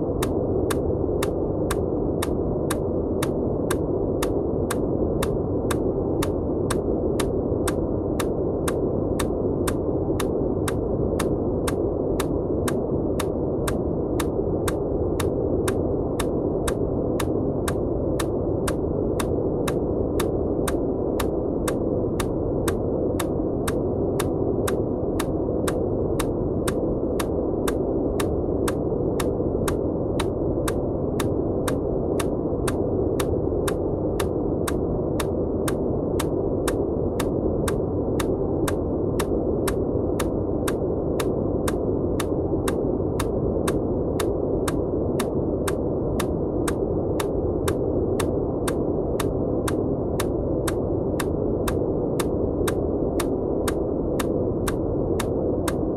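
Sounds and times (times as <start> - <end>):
muffled white noise hiss: 0.0 - 55.9
sharp ticks: 0.2 - 55.9.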